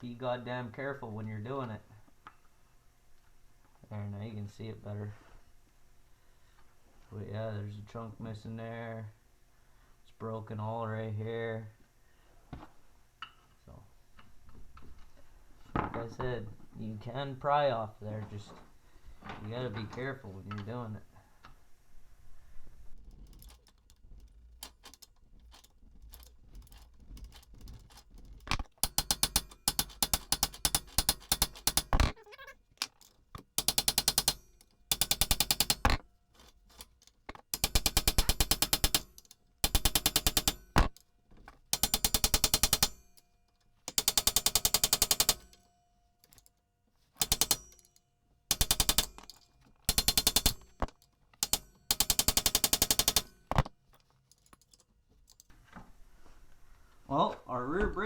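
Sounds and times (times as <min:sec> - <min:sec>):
air impact tool hammering: 0:28.5 - 0:32.1, 0:33.4 - 0:36.0, 0:37.3 - 0:41.0, 0:41.7 - 0:43.2, 0:43.9 - 0:45.8, 0:47.2 - 0:53.7.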